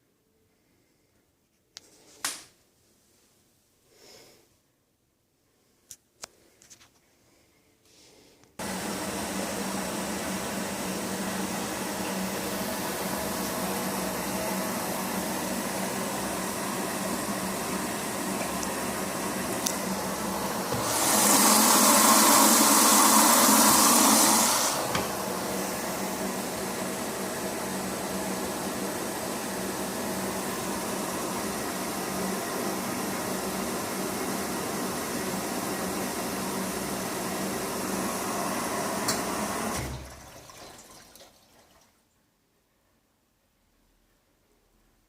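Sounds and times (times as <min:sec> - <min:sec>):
washing machine low hum: 0:08.6 - 0:41.9
washing machine filling with water: 0:08.6 - 0:42.0.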